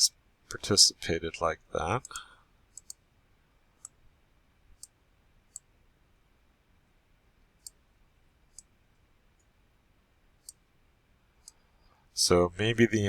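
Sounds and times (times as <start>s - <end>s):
computer mouse clicks: 2.0s - 3.0s, 3.8s - 4.0s, 4.8s - 5.7s, 7.6s - 7.8s, 8.5s - 8.7s, 10.4s - 10.6s.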